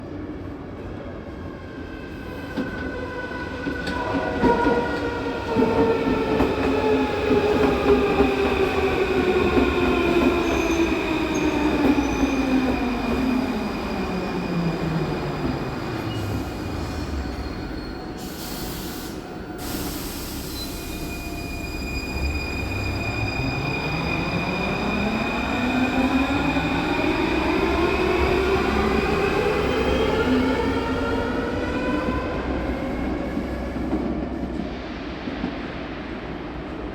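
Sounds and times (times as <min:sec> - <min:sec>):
air hiss: 0:18.1 - 0:21.5.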